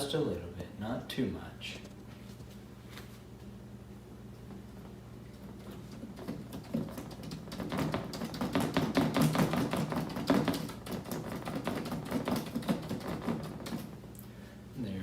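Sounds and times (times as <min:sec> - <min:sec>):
faint steady hum: 0:00.0 - 0:15.0
brush tapping on paper: 0:05.4 - 0:14.0.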